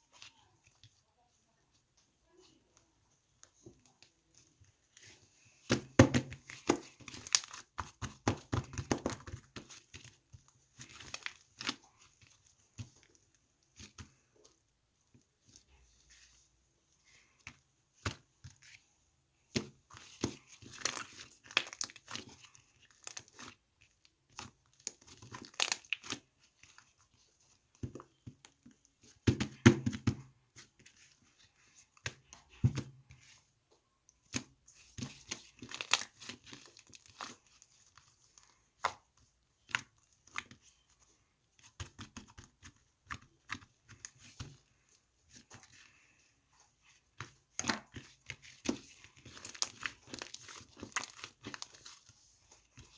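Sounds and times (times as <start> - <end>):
crinkly material crumpling: 43.8 - 52.9.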